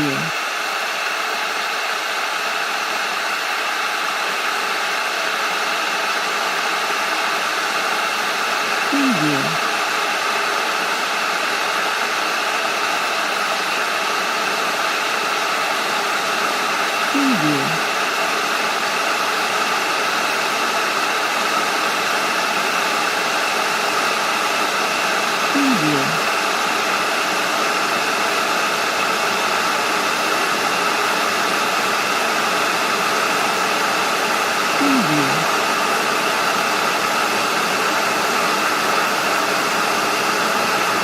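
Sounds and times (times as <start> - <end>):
person speaking: 0.0 - 0.3, 8.9 - 9.6, 17.2 - 17.8, 25.5 - 26.3, 34.8 - 35.5.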